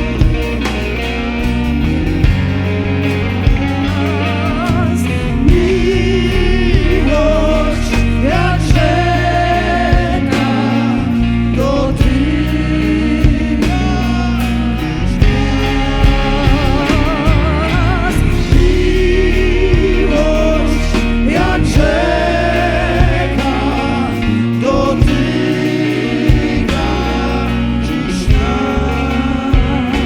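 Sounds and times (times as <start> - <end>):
drum hits: 0.0 - 4.1, 15.2 - 22.2
voices singing with vibrato: 0.0 - 30.0
worship band playing: 0.0 - 30.0.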